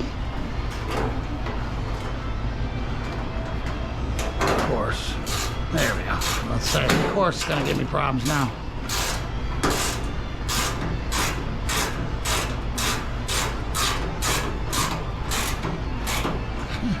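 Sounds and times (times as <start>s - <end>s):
steady low hum: 0.0s - 17.0s
screwdriver scraping strokes: 6.2s - 6.8s.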